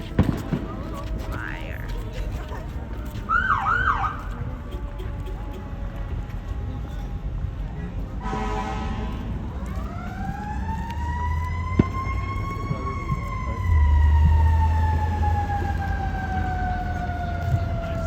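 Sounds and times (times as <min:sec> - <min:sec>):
fire engine siren wailing: 0:03.3 - 0:04.5, 0:08.2 - 0:18.0.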